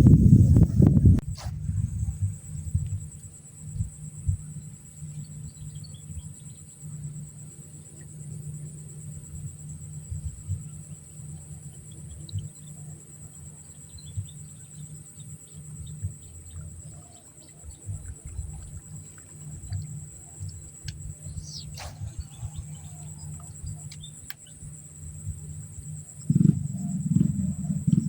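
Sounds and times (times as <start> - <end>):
low rumble: 0.0 - 3.1
high-pitched insect buzz: 9.6 - 28.0
sharp click: 20.9 - 22.8
short bird chirps: 21.3 - 24.1.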